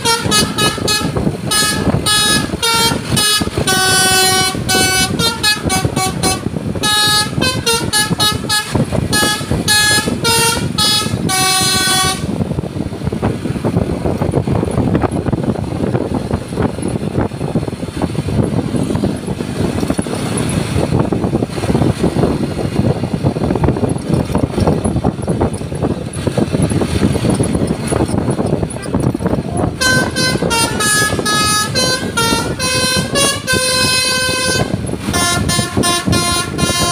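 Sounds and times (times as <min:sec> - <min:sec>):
bus horn playing a tune: 0:00.0 - 0:12.9, 0:26.1 - 0:36.9
bus engine running: 0:00.0 - 0:36.9
road traffic: 0:00.0 - 0:36.9.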